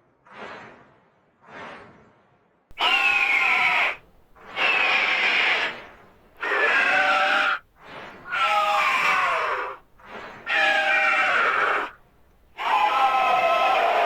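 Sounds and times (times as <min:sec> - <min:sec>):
rasping screams falling in pitch: 0:02.8 - 0:14.0.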